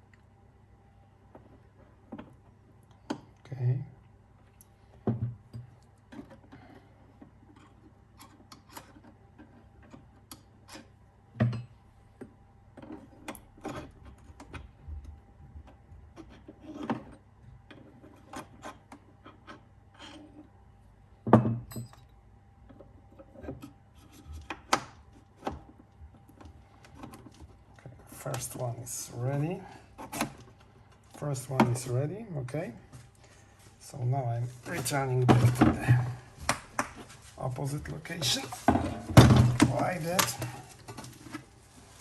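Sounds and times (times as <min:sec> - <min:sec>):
parts clicking and knocking: 0:37.8 - 0:41.5.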